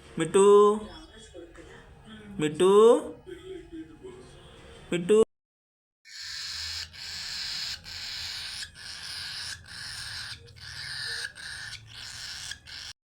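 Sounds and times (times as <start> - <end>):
bird chick begging calls: 6.1 - 12.9.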